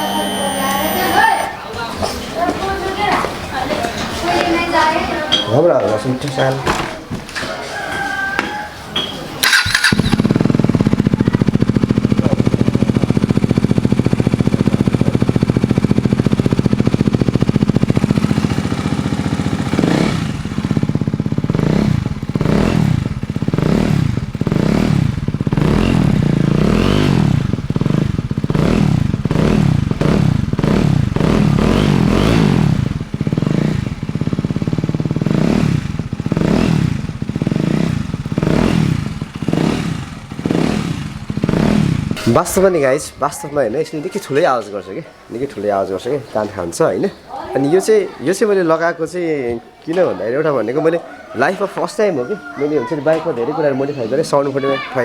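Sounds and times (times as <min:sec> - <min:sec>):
motorcycle engine idling and revving: 0:00.0 - 0:01.6, 0:08.4 - 0:44.7.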